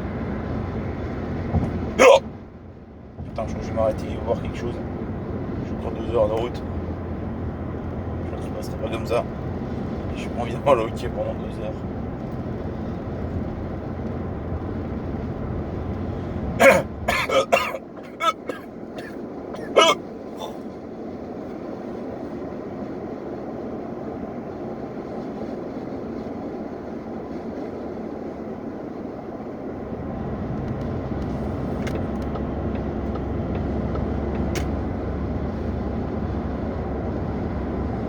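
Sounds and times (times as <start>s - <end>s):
car cabin road rumble: 0.0s - 38.0s
person hiccuping: 2.0s - 2.2s, 16.6s - 20.6s.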